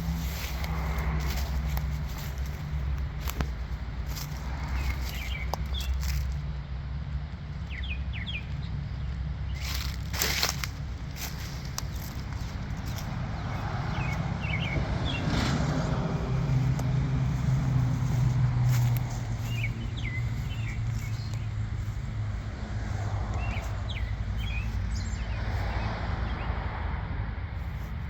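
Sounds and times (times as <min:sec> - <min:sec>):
low outdoor rumble: 0:00.0 - 0:28.0
bird chirps: 0:11.4 - 0:15.4, 0:17.4 - 0:22.0, 0:23.4 - 0:25.6.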